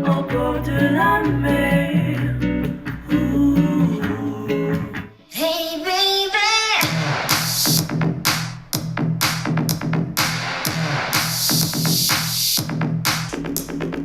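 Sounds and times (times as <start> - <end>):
plucked guitar: 0.0 - 5.2
person singing: 0.0 - 6.9.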